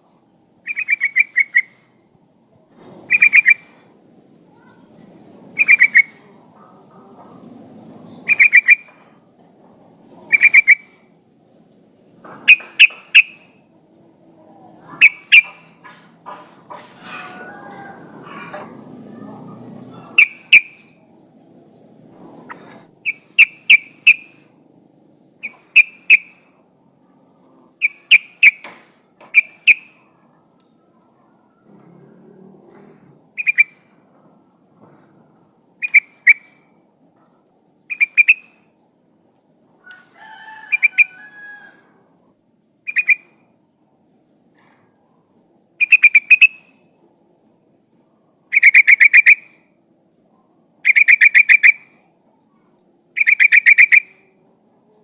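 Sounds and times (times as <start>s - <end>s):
bulbul calling: 0.6s - 2.1s, 2.9s - 3.8s, 5.5s - 9.0s, 10.0s - 11.0s, 12.0s - 13.6s, 14.8s - 16.8s, 19.6s - 21.0s, 21.6s - 24.5s, 25.4s - 26.5s, 27.6s - 30.1s, 32.2s - 33.9s, 35.6s - 36.7s, 37.9s - 38.7s, 42.8s - 44.7s, 45.8s - 47.0s, 48.4s - 49.6s, 50.8s - 52.0s, 53.1s - 54.3s.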